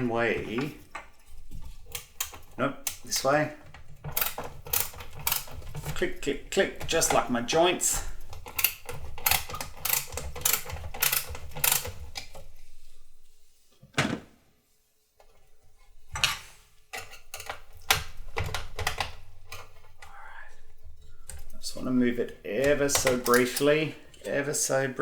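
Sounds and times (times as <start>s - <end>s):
ratcheting screwdriver clicking: 4.0s - 6.0s, 8.2s - 12.4s.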